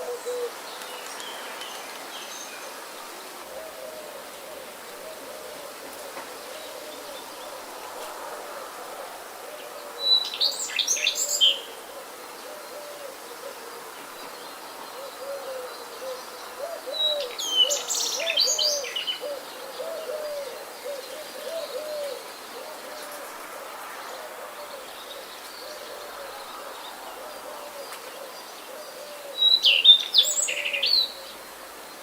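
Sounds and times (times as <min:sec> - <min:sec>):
low bird hooting: 0:00.0 - 0:00.6.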